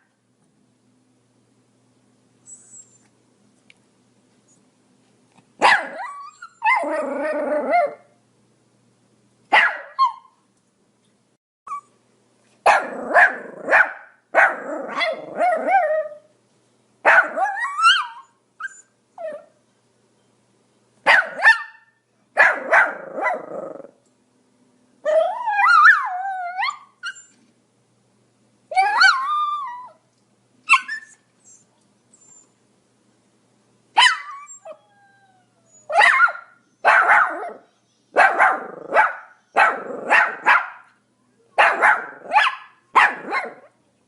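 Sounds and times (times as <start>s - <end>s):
dog barking: 5.6s - 6.1s, 9.5s - 10.3s, 12.7s - 15.3s, 17.0s - 17.6s, 21.1s - 23.5s, 34.0s - 34.4s, 35.9s - 40.9s, 41.6s - 43.7s
dog yelping: 5.6s - 8.0s, 9.5s - 10.4s, 12.7s - 16.2s, 17.1s - 19.5s, 21.1s - 23.9s, 25.1s - 27.4s, 28.7s - 30.0s, 30.7s - 31.6s, 34.0s - 34.9s, 35.7s - 37.6s, 38.2s - 40.8s, 41.6s - 43.7s.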